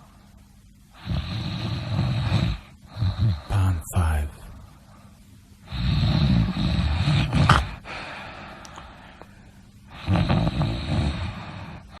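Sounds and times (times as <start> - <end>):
snort: 1.0 - 3.6, 5.7 - 8.0, 9.9 - 12.0
person snoring: 1.0 - 4.3, 5.6 - 8.1, 9.9 - 12.0.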